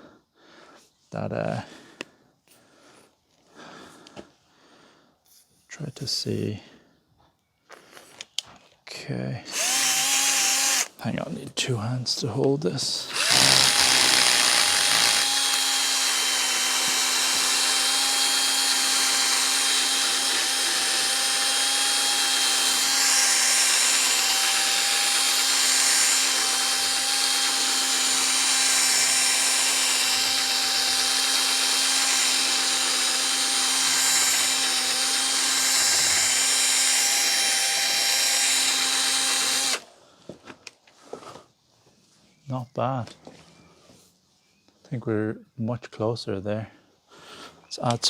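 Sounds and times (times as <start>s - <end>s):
electric drill motor whine: 9.5s - 10.9s, 13.1s - 39.9s.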